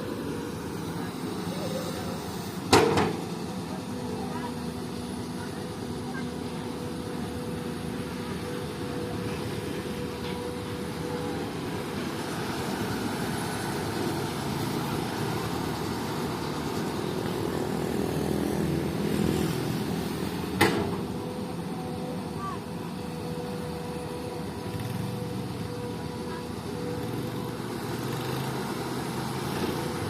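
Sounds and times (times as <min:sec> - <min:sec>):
excavator diesel engine running: 0:00.0 - 0:30.0.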